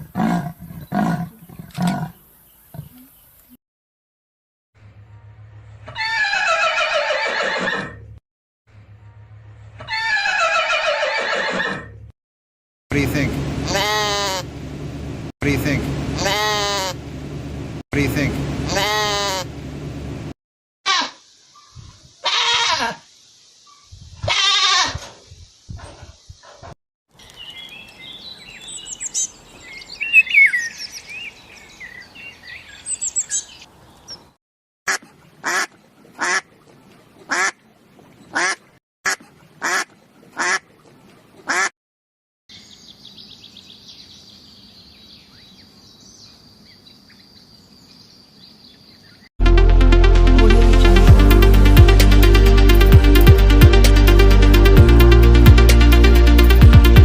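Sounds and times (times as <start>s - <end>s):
birds chirping and twittering: 0.0s - 3.6s, 21.3s - 22.2s, 23.1s - 24.1s, 25.2s - 34.4s, 42.5s - 49.3s
loud animal calls: 5.9s - 8.0s, 9.8s - 11.9s
short quacks: 34.9s - 36.5s, 38.4s - 40.7s, 41.5s - 41.7s.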